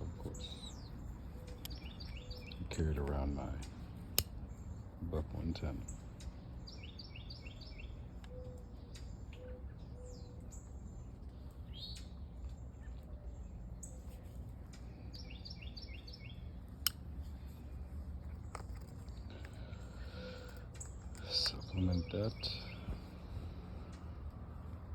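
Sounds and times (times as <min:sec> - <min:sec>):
low background rumble: 0:00.0 - 0:24.9
songbird chirping: 0:00.0 - 0:24.9.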